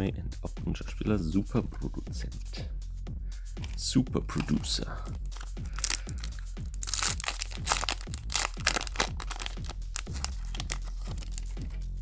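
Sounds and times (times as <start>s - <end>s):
electronic music with kick drum: 0.0s - 12.0s
foil pack crinkling and tearing: 3.6s - 3.8s, 5.2s - 11.8s.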